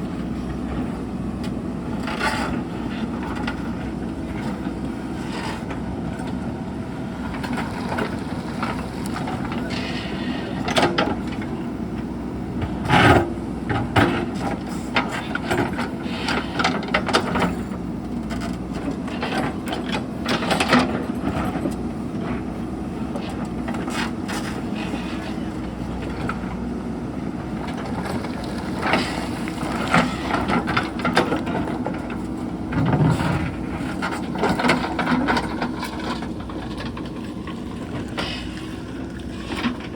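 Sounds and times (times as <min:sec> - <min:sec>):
diesel engine running under load: 0:00.0 - 0:39.9
bucket clunking and scraping rocks: 0:27.5 - 0:39.9.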